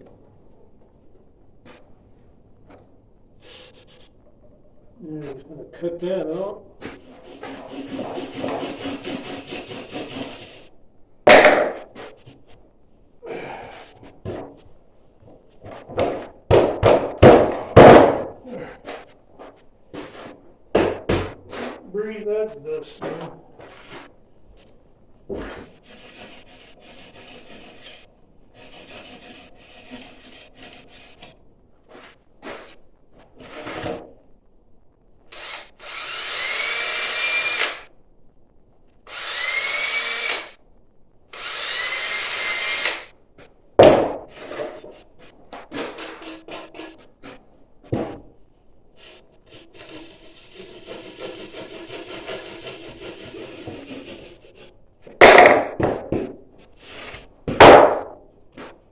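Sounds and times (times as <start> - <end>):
hand saw cutting board: 6.3 - 10.7, 11.3 - 12.3, 25.3 - 32.8, 35.3 - 37.8, 39.1 - 40.6, 41.4 - 43.1, 43.8 - 48.2, 49.0 - 56.2, 56.8 - 58.8
sharp knock: 11.3 - 12.0, 55.2 - 56.0.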